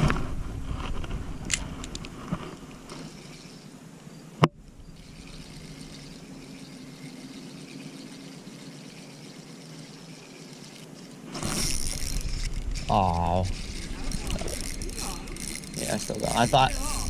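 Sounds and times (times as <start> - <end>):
creek water flowing: 4.7 - 17.0.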